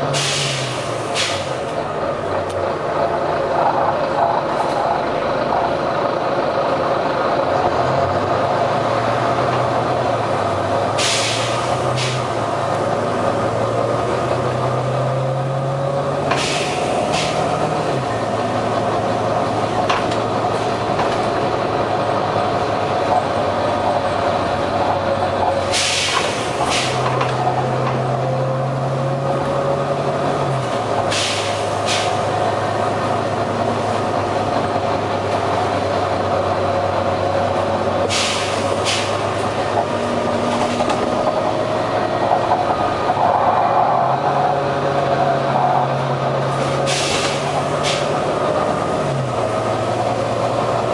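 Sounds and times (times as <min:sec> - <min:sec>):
bus diesel engine running: 0:00.0 - 0:50.9
short engine hisses: 0:00.1 - 0:01.6, 0:11.0 - 0:12.2, 0:16.4 - 0:17.4, 0:25.7 - 0:27.0, 0:31.1 - 0:32.2, 0:38.1 - 0:39.2, 0:46.9 - 0:48.1.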